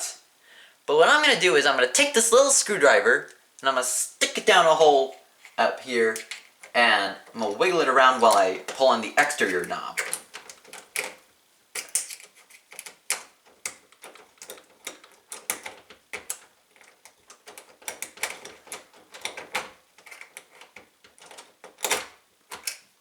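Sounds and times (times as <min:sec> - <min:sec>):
metal clicks and rattles: 0:08.3 - 0:11.2, 0:11.8 - 0:23.0.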